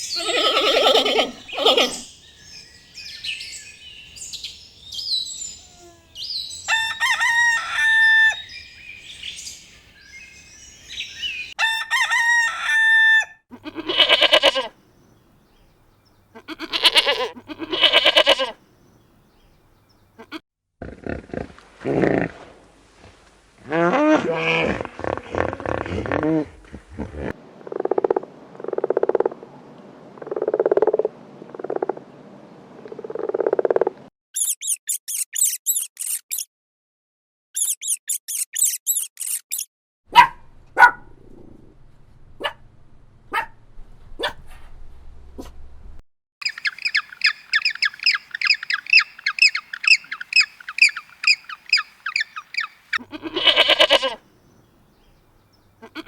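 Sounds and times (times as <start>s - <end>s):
high bird chirping: 34.4s - 36.5s, 37.6s - 39.7s, 46.4s - 53.8s
sharp squawks: 46.4s - 54.2s.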